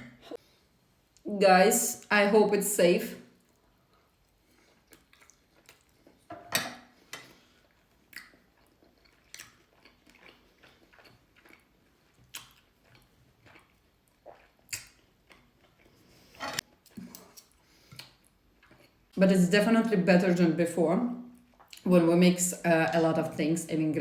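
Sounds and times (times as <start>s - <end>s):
person chewing food: 3.4s - 6.3s, 6.9s - 19.2s, 21.3s - 21.8s.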